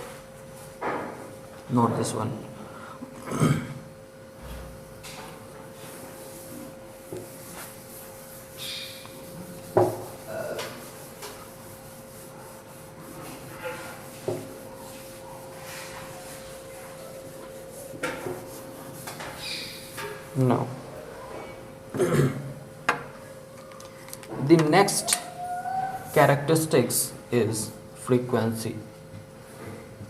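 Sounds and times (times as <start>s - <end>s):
faint steady hum: 0.0s - 30.0s
rubbing or scraping: 7.2s - 20.4s.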